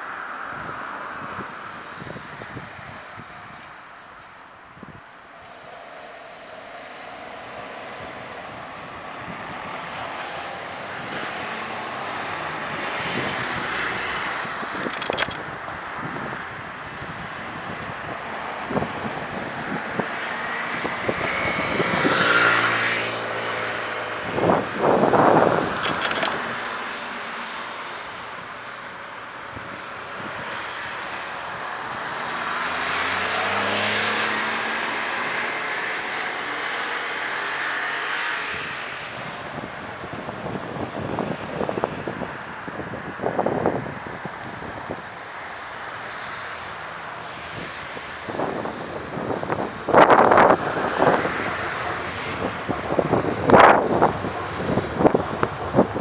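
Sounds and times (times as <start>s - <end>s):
vehicle approaching: 16.1s - 42.0s.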